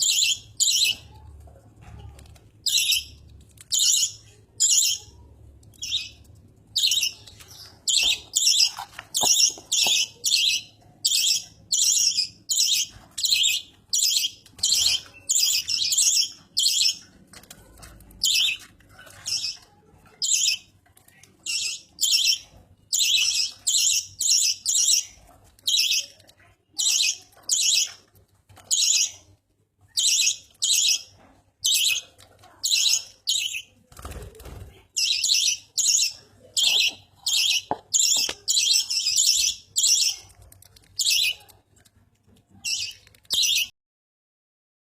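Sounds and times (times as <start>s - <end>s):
budgerigar chirping: 35.0s - 40.2s.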